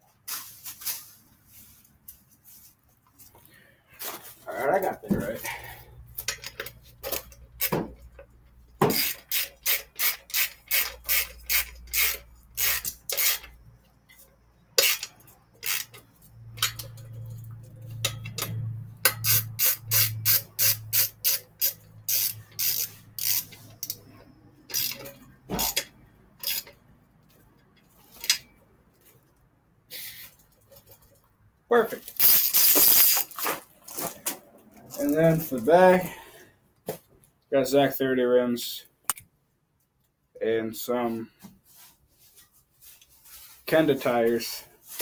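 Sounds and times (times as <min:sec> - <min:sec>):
wrench ratcheting strokes: 0:08.9 - 0:13.6, 0:14.8 - 0:24.0, 0:24.7 - 0:26.8, 0:32.1 - 0:33.4.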